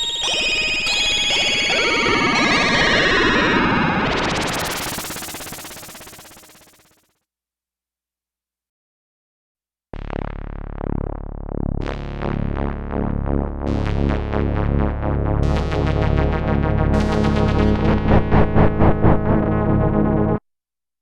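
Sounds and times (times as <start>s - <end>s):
bright synthesizer tones: 0.0s - 6.5s
synthesizer low drone: 0.0s - 6.9s, 10.0s - 20.4s.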